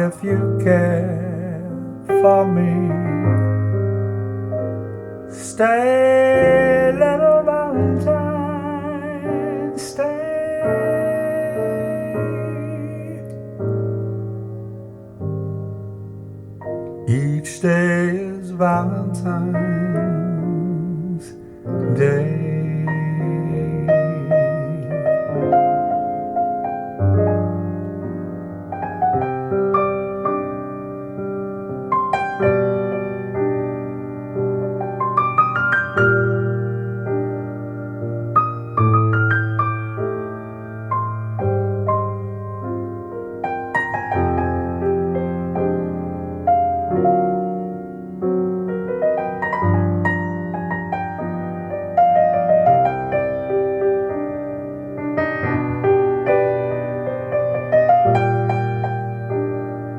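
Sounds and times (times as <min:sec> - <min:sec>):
solo piano playing: 0:00.0 - 0:59.9.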